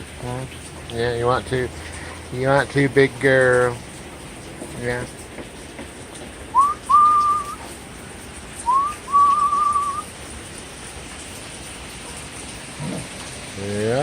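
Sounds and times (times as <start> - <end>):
wind and rain hiss: 0.0 - 14.0
person whistling: 6.6 - 7.6, 8.6 - 10.1.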